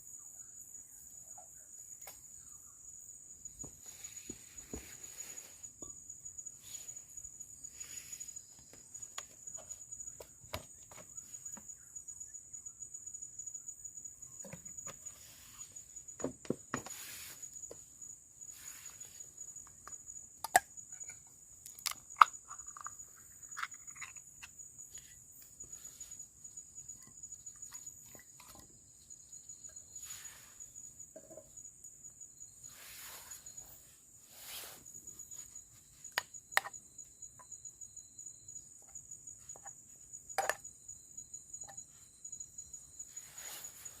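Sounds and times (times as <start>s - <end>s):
insects trilling: 0.0s - 44.0s.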